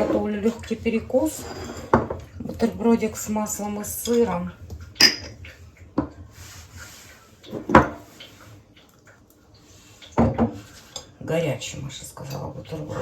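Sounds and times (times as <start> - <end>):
kitchenware knocks and clatters: 1.2 - 2.5, 5.0 - 5.4, 7.5 - 8.1, 10.2 - 10.7.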